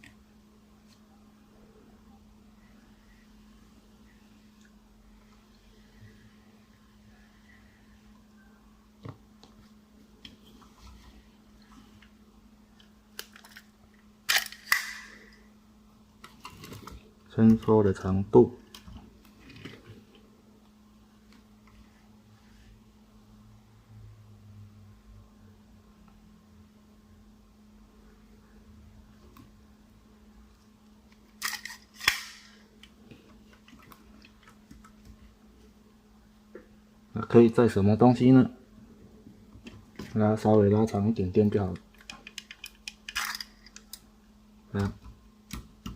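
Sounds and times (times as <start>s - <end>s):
metal model clicking and tapping: 41.9s - 44.0s.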